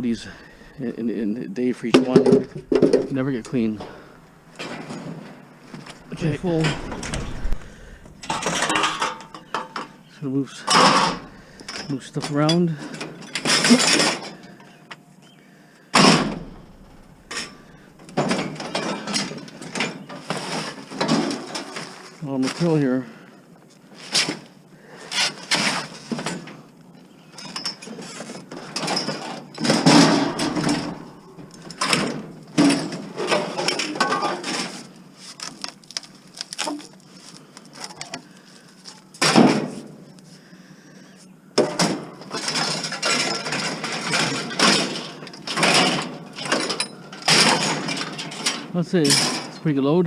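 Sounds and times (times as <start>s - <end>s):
metal crashes: 2.0s - 5.2s, 5.9s - 9.9s, 10.7s - 12.0s, 16.0s - 21.8s, 28.6s - 34.7s, 41.6s - 49.6s
scrap metal clanking and scraping: 2.0s - 14.8s, 16.0s - 22.8s, 27.3s - 35.0s, 41.6s - 49.7s.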